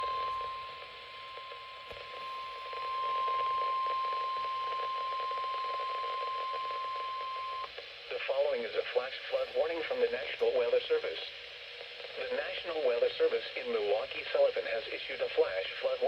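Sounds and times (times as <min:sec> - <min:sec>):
steady high alarm tone: 0:00.0 - 0:07.6
radio static hiss: 0:00.0 - 0:16.0.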